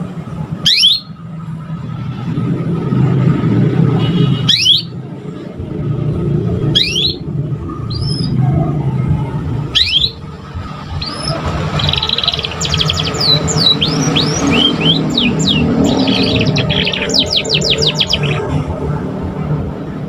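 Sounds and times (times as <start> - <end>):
canary rising whistles: 0.6 - 1.2, 4.5 - 5.0, 6.6 - 7.3, 7.9 - 8.4, 9.7 - 10.2, 11.0 - 18.5
canary trill: 0.6 - 1.2, 4.1 - 5.2, 6.4 - 18.6.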